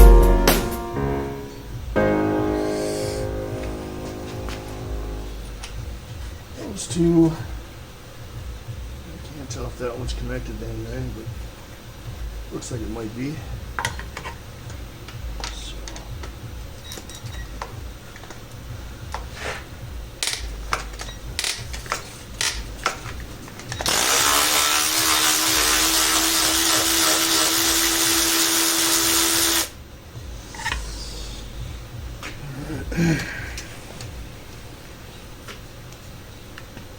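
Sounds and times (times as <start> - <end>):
power tool motor running: 23.8 - 29.7.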